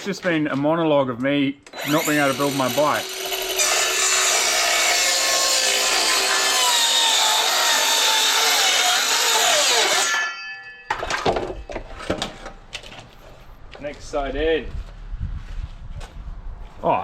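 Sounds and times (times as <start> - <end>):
power saw cutting wood: 1.8 - 10.3
knocks and clatter: 10.9 - 13.2.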